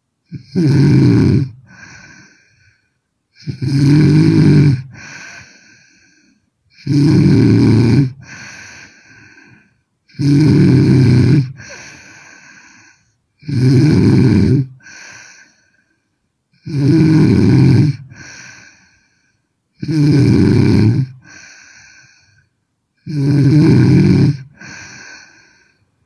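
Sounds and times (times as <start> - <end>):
woman snoring: 0.3 - 2.8, 3.4 - 15.8, 16.5 - 19.2, 19.8 - 25.8
soft breath out: 11.5 - 13.2.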